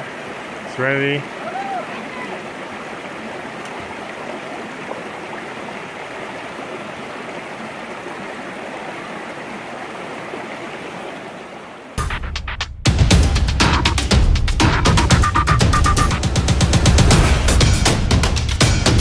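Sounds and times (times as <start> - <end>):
stream water flowing: 0.0 - 12.0
loud music: 12.0 - 19.0.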